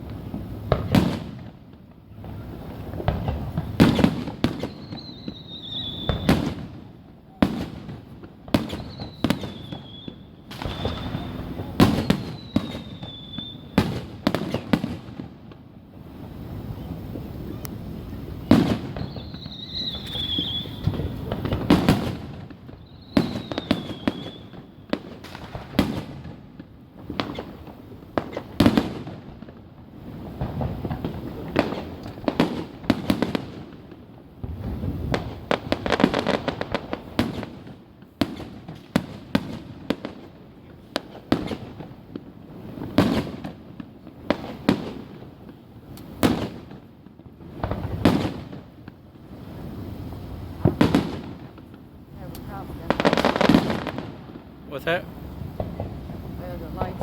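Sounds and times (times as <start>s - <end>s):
fireworks booming and crackling: 0.0s - 57.0s
short whistling tones: 4.6s - 6.3s, 8.7s - 13.8s, 19.0s - 20.9s, 22.8s - 24.5s.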